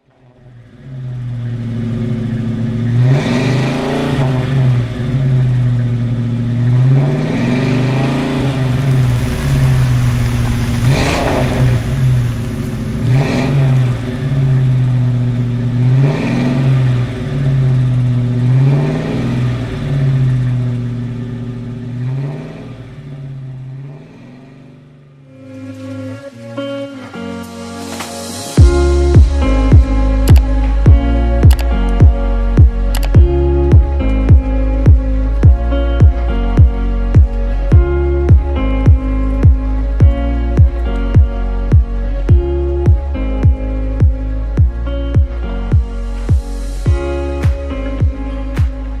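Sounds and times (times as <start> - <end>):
car engine revving: 0.0 - 49.0
sharp cracks: 29.2 - 33.2.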